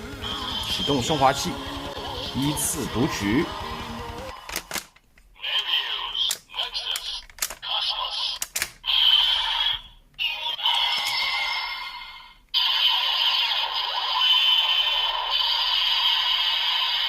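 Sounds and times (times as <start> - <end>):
electronic fusion sound effect: 0.0 - 4.3
recorded voice from toy speaker: 0.2 - 3.6, 5.3 - 17.0
plastic toy clicks: 4.3 - 5.2, 6.2 - 9.1.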